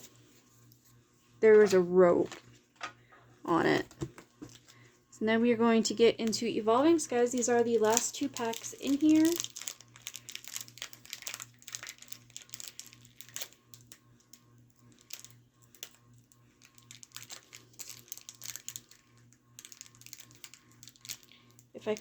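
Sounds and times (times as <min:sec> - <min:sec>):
foil wrapper crinkling: 0:04.4 - 0:04.8, 0:06.2 - 0:22.0.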